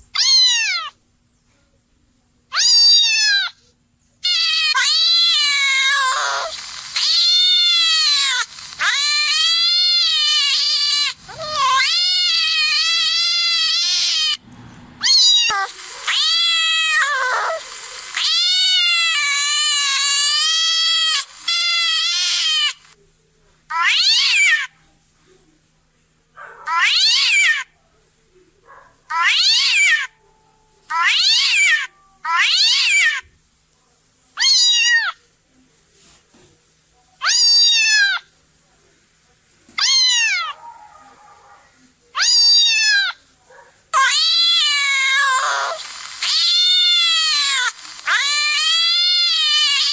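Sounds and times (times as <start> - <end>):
cats meowing: 0.1 - 1.0, 2.5 - 3.5, 4.2 - 14.4, 15.0 - 22.8, 23.7 - 24.7, 26.4 - 27.7, 29.1 - 30.3, 30.9 - 33.3, 34.4 - 35.2, 37.2 - 38.3, 39.8 - 43.2, 43.9 - 49.9.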